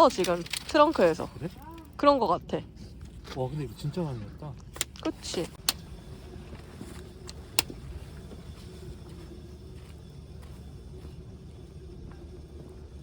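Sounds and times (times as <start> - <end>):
vehicle engine idling: 2.7 - 13.0.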